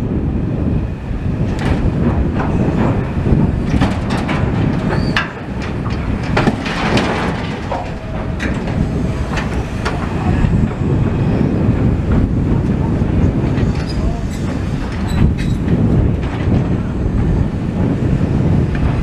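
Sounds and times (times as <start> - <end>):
demolition machinery rumbling: 0.0 - 19.0
clanks and knocks: 1.4 - 19.0
metallic squeals: 4.8 - 5.4.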